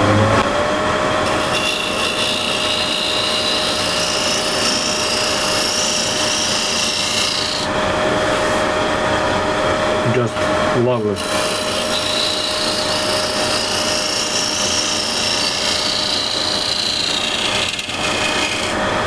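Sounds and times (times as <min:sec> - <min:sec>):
lathe motor humming: 0:00.0 - 0:19.0
scraper rasping on spinning wood: 0:01.3 - 0:08.6, 0:11.0 - 0:18.8.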